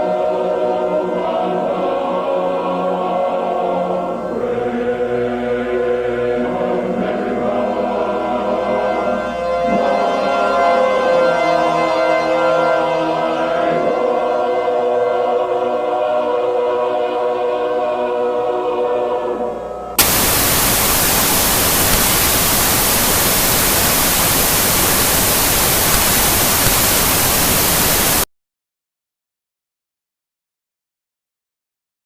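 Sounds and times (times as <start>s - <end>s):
loud static hiss: 20.0s - 28.3s.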